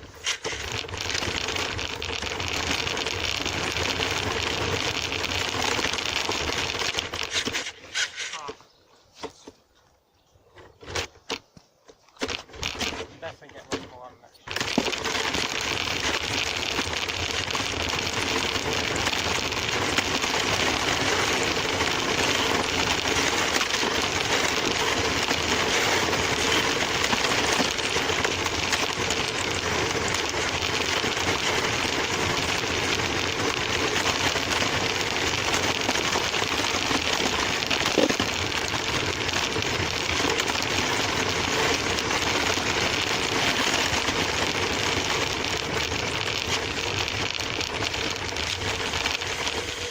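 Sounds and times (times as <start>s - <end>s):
wheels rolling over ground: 0.0s - 49.9s
toy car motor buzzing: 14.5s - 49.9s.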